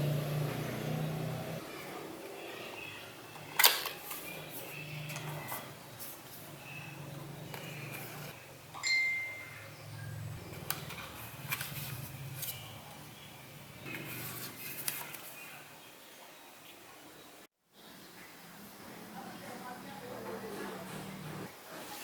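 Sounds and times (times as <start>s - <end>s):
short high ringing tone: 8.8s - 9.6s.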